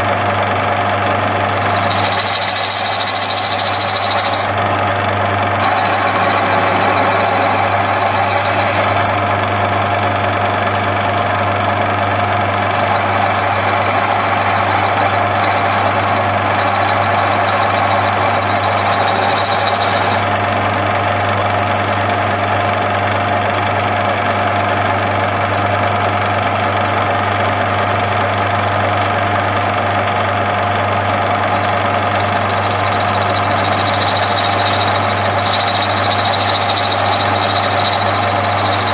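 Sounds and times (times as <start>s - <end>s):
lathe motor humming: 0.0s - 20.7s, 30.9s - 38.9s.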